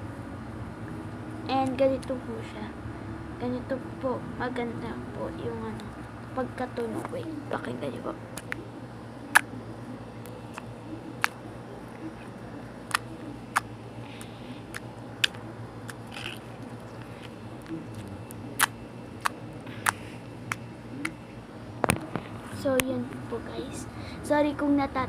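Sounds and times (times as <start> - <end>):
steady low hum: 0.0 - 25.0
slime squishing: 12.9 - 21.2.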